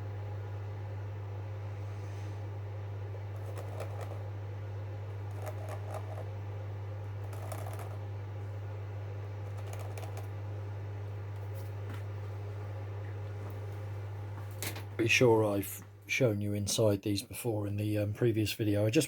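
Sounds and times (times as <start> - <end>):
steady low hum: 0.0 - 19.0
scratching and clicking handling noise: 3.4 - 4.4, 5.1 - 6.3, 7.2 - 8.0, 9.5 - 10.4.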